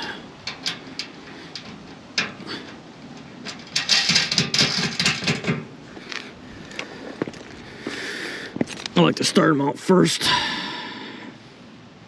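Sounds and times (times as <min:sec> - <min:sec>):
hardware clattering and rattling: 0:00.0 - 0:05.8
tools clicking and knocking: 0:03.4 - 0:05.7.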